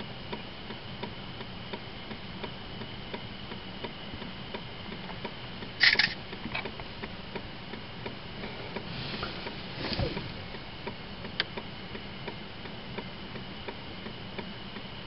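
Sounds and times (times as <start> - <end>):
sharp rustle: 5.8 - 6.2.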